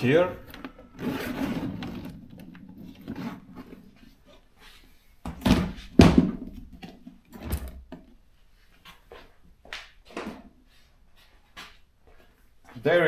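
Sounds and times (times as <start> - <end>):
typewriters knocking on table: 5.3 - 6.6.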